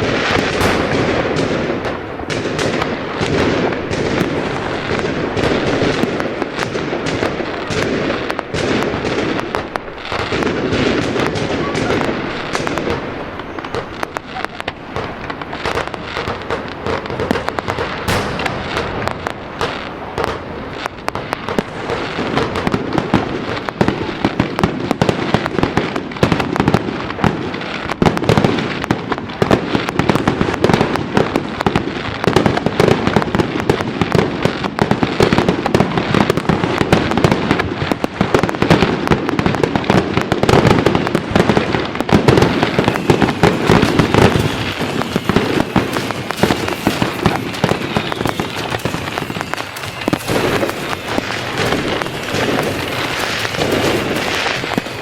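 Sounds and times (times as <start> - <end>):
firecrackers crackling: 0.0 - 55.0
firework bangs: 0.0 - 55.0.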